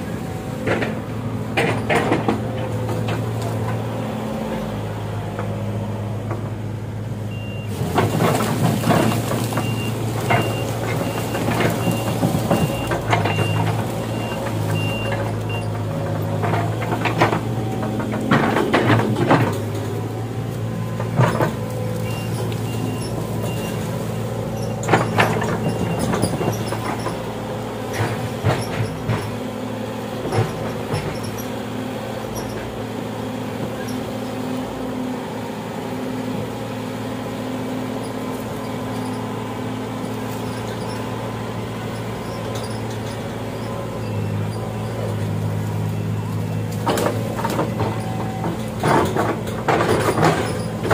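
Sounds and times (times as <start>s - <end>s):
excavator diesel engine running: 0.0s - 50.9s
metallic clanks and knocks: 7.9s - 20.1s, 24.6s - 27.3s, 46.7s - 50.9s.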